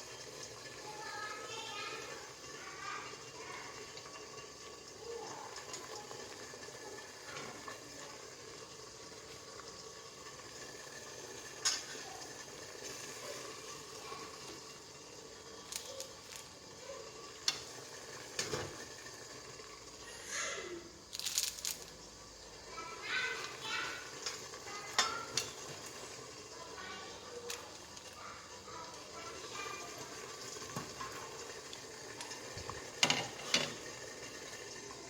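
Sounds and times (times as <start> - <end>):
food hissing on stove: 0.0 - 35.0
utensils clinking: 21.1 - 22.0, 24.2 - 25.9, 32.1 - 33.9.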